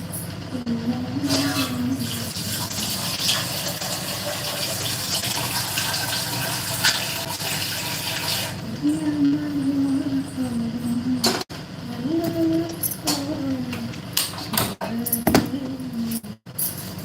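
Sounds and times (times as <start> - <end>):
water running from a tap: 1.3 - 8.6.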